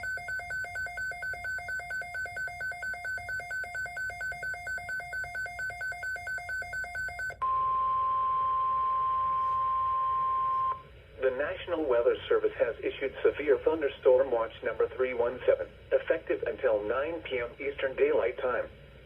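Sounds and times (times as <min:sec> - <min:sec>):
two-tone electronic beeping: 0:00.0 - 0:10.8.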